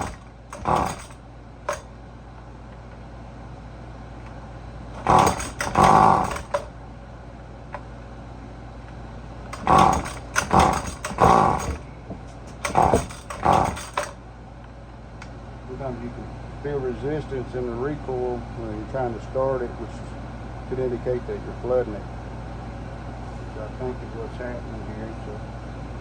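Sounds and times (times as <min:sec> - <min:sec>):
recoil starter rope pulls: 0:00.0 - 0:01.9, 0:05.0 - 0:06.7, 0:09.5 - 0:14.2.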